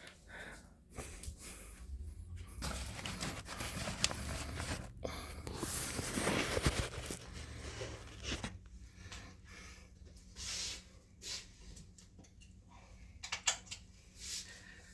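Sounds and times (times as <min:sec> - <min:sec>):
rustling handling noise: 0:02.5 - 0:08.6.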